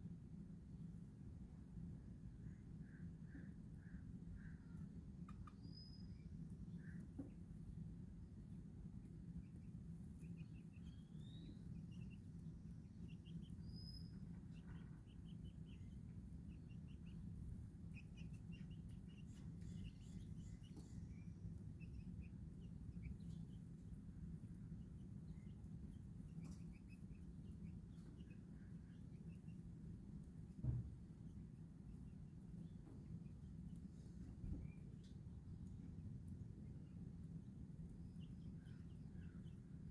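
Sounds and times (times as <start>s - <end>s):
steady low rumble: 0.0s - 39.9s
baby chicks chirping: 2.1s - 39.9s
high sweeping bird calls: 5.3s - 7.0s, 10.3s - 23.7s.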